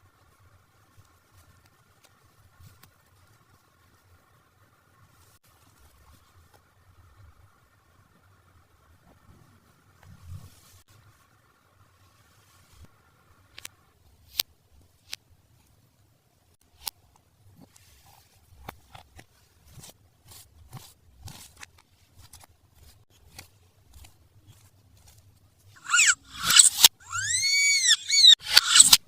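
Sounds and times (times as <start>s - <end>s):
toy packaging being opened: 25.8s - 29.0s.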